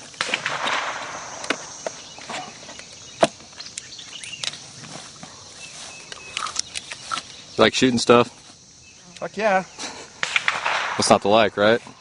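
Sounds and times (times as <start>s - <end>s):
insects droning: 0.0s - 12.0s
footsteps: 4.2s - 7.3s.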